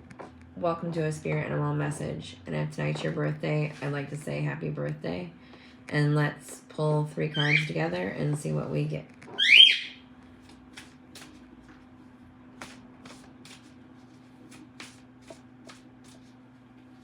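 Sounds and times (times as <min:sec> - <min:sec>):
high-pitched rising squeak: 0:09.4 - 0:10.0
cards being shuffled: 0:10.2 - 0:17.0.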